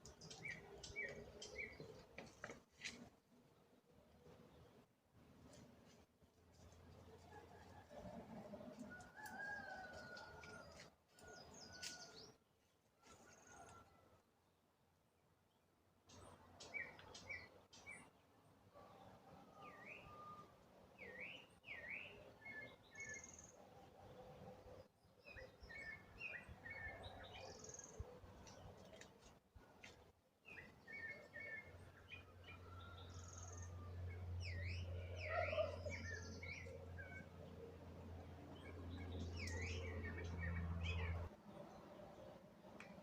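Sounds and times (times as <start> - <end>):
birds chirping and calling: 34.4 - 37.3.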